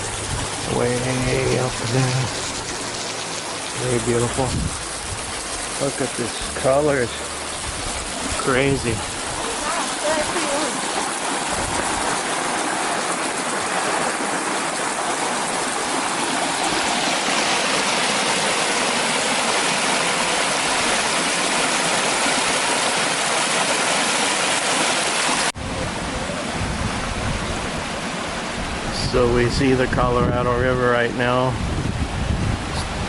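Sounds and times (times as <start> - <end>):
low rumble: 0.0 - 9.5
waterfall rushing: 0.0 - 29.3
stream splashing over rocks: 0.0 - 29.8.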